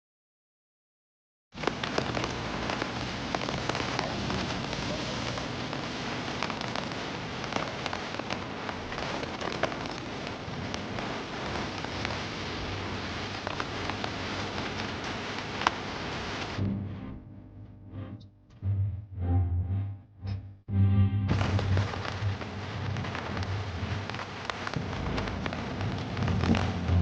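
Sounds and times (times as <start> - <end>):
steady rain falling: 1.6 - 16.6, 21.3 - 27.0.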